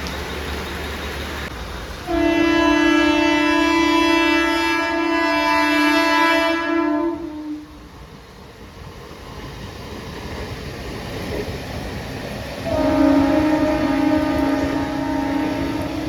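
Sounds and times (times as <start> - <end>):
train noise: 0.0 - 16.0
train horn blast: 2.0 - 7.8, 12.6 - 16.0.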